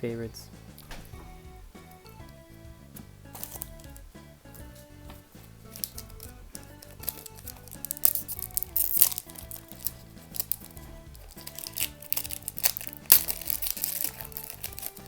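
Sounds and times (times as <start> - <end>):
background music: 0.0 - 15.0
foil wrapper tearing open: 5.7 - 15.0.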